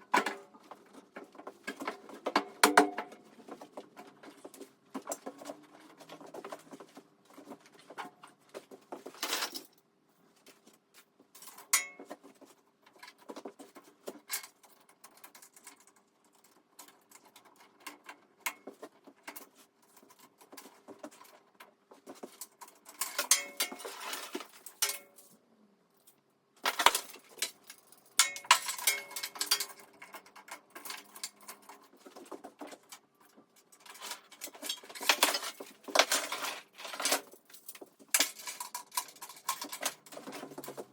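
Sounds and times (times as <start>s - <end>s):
hard parts clattering: 22.2s - 25.3s, 26.6s - 33.0s, 33.7s - 40.9s.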